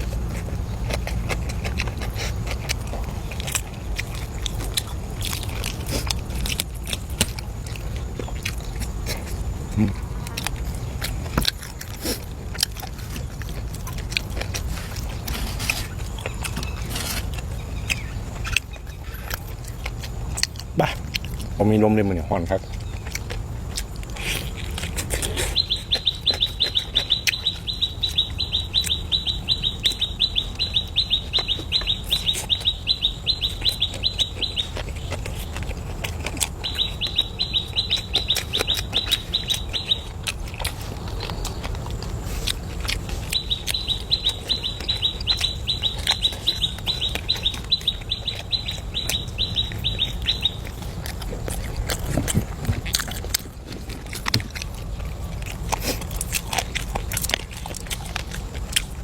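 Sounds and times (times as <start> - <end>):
bird chirping rapidly: 24.4 - 36.0, 36.6 - 41.8, 42.6 - 51.0.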